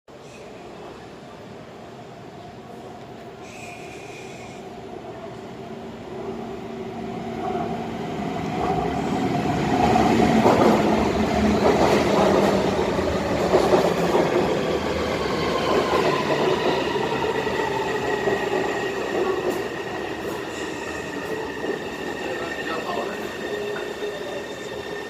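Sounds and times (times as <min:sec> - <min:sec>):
train wheels rumbling on rails: 0:07.4 - 0:25.0.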